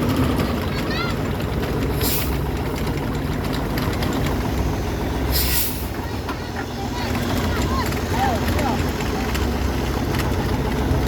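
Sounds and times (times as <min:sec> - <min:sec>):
heavy machine engine rumbling: 0:00.0 - 0:11.0
short hiss: 0:05.3 - 0:05.9.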